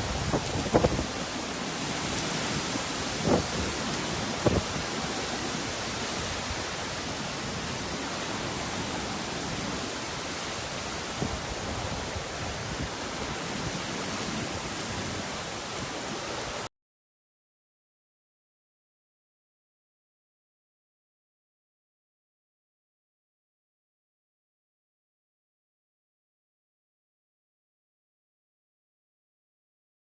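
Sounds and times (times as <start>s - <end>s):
heavy rain and wind hissing: 0.0s - 16.7s.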